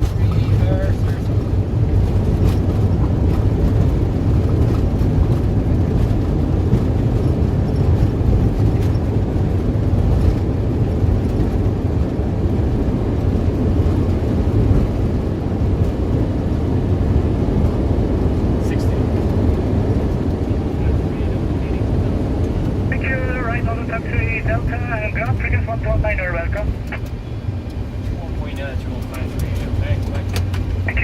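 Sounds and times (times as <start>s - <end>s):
jet engines in reverse thrust: 0.0s - 31.0s.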